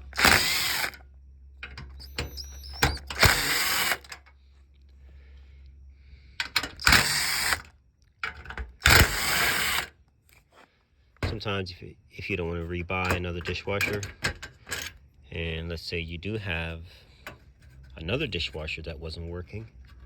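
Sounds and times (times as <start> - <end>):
cordless drill driving screws: 0.0 - 1.0, 1.9 - 4.2, 6.7 - 7.7, 8.8 - 9.9.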